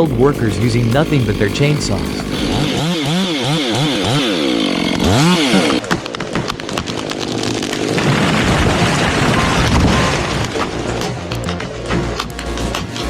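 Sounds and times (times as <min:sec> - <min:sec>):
chainsaw engine revving: 0:00.0 - 0:13.0
rough cracking and knocking noise: 0:04.9 - 0:13.0.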